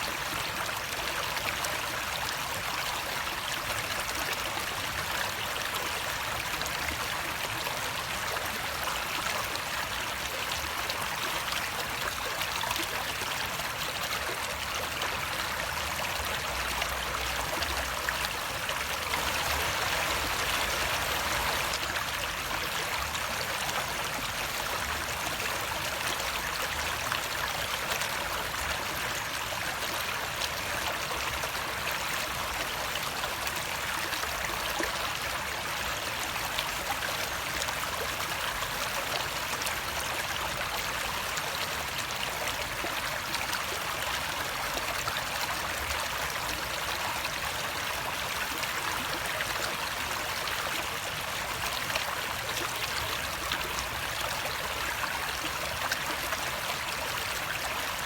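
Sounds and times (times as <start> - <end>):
running water rushing: 15.4 - 28.7.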